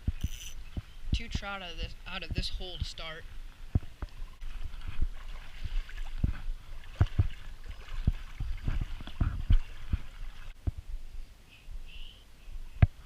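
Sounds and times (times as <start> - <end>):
river water gurgling: 3.0 - 10.6
low knocks and bumps: 8.0 - 10.8.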